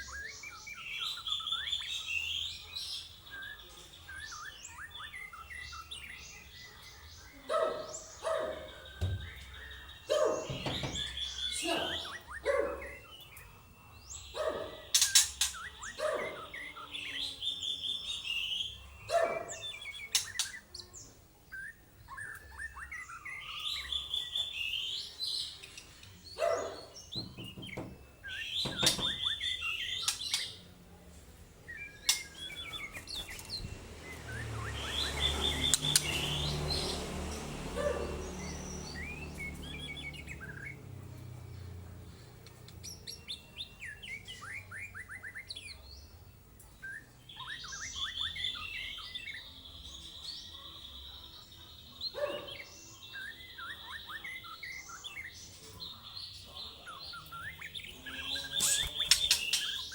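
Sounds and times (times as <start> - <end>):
songbird chirping and singing: 0.0 - 59.9
sharp knocks: 10.4 - 11.2, 27.2 - 29.4.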